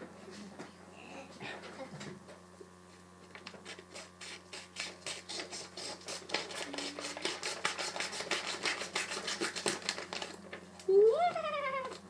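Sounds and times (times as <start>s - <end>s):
quick scratching strokes: 3.6s - 9.8s.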